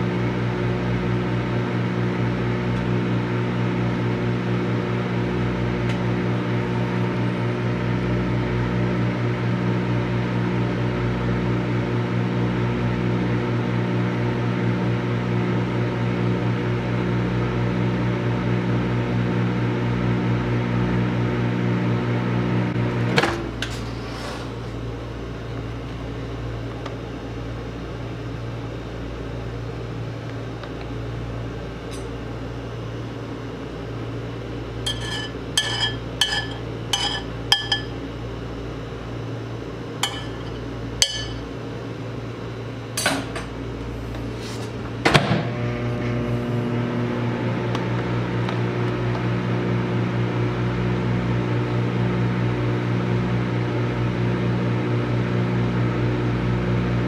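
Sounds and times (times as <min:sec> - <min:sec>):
microwave oven humming: 0:00.0 - 0:57.0
microwave clunk: 0:45.0 - 0:45.6.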